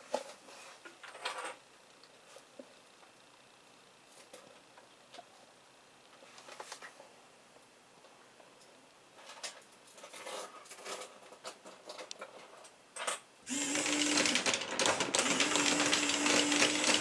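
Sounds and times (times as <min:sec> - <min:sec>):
fast mechanical clatter: 0:13.5 - 0:17.0
toy motor humming: 0:13.5 - 0:17.0.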